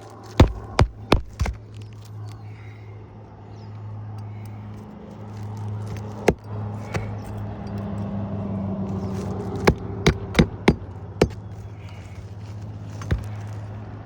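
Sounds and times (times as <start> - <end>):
steady low hum: 0.0 - 14.0
hammer driving nails into shingle: 0.4 - 1.6, 9.6 - 11.5, 13.0 - 13.6.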